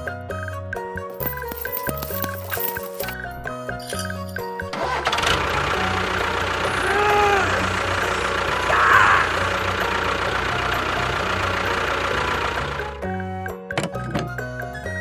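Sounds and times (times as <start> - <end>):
engine running: 1.3 - 13.2.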